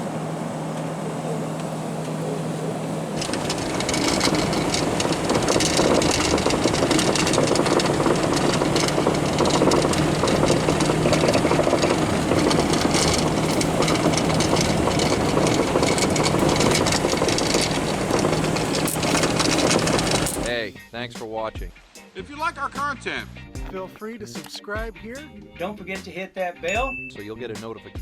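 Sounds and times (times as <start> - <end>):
vehicle engine running: 0.0 - 20.6.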